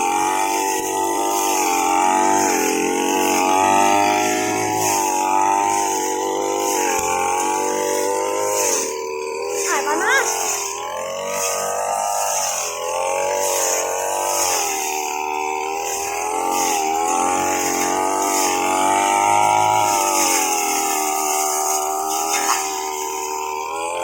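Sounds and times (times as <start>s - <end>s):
grass cutter engine running: 0.0s - 24.0s.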